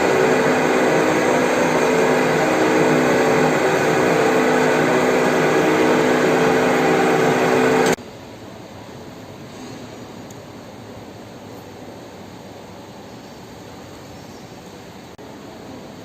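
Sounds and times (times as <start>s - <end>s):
metal-cutting bandsaw running: 0.0s - 8.0s.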